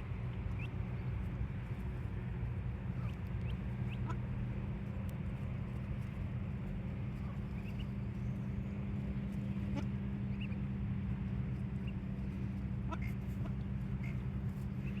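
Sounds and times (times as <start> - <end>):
low hum: 0.0 - 15.0
ducklings peeping: 0.2 - 1.5, 2.9 - 4.3, 7.0 - 10.6, 11.4 - 15.0.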